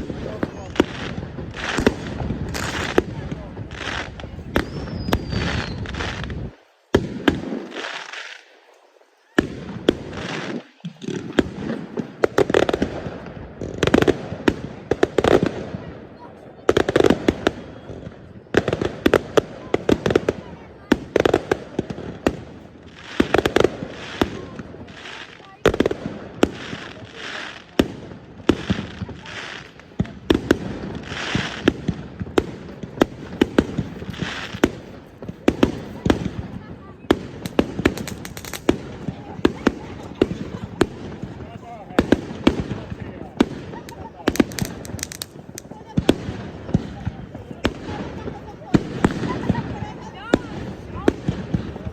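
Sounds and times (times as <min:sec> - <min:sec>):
fireworks bangs and crackling: 0:00.0 - 0:51.9.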